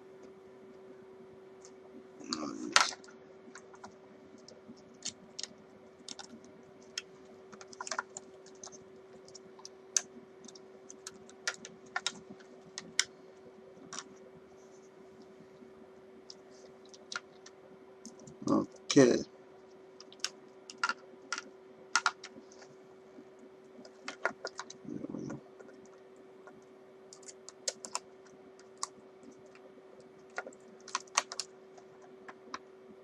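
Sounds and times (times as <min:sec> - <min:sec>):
faint steady hum: 0:00.0 - 0:33.0
small parts and tools clicking: 0:20.0 - 0:22.3, 0:23.8 - 0:29.6, 0:30.2 - 0:32.6.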